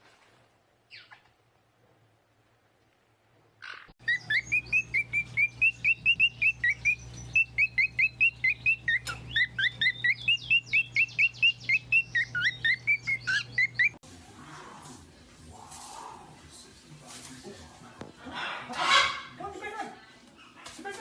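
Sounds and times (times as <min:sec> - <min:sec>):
bird chirping: 0:00.9 - 0:01.3, 0:03.6 - 0:14.0
low steady hum: 0:01.5 - 0:20.8.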